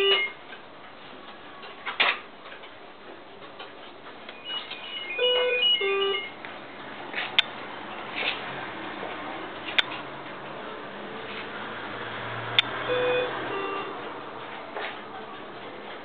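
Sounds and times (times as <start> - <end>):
clock chime tune: 12.9 - 13.9.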